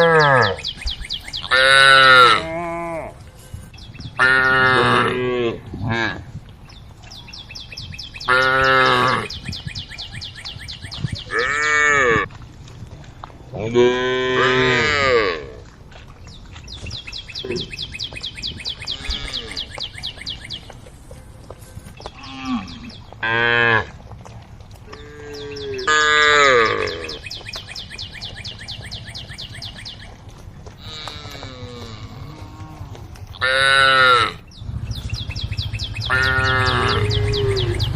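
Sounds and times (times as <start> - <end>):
cattle mooing: 0.0 - 0.6, 1.4 - 3.2, 4.2 - 6.2, 13.6 - 15.6, 18.9 - 19.7, 24.9 - 27.2, 30.8 - 34.4, 36.1 - 37.9.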